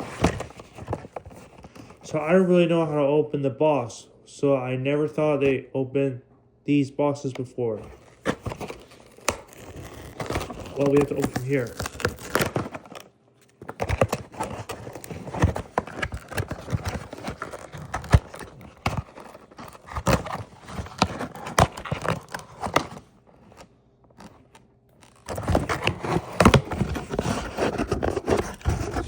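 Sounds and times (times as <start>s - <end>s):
cardboard box being opened: 0.0s - 2.0s, 7.8s - 29.0s.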